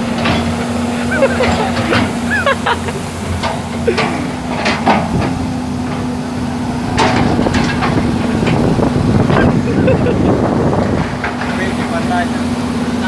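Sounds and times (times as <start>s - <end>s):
excavator diesel engine running: 0.0s - 13.0s
sharp metal knocks and clanks: 0.1s - 0.7s, 3.4s - 6.1s, 6.9s - 8.7s.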